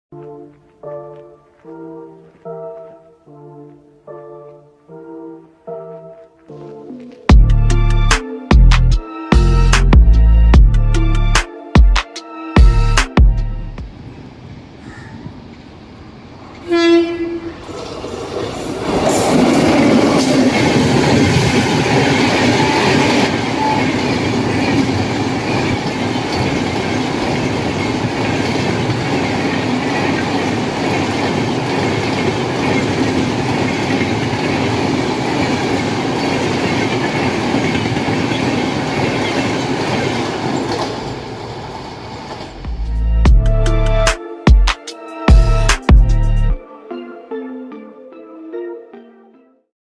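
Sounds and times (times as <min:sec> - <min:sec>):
train rail and wheel noise: 0:13.8 - 0:43.2
train horn: 0:16.6 - 0:17.8, 0:22.0 - 0:25.0.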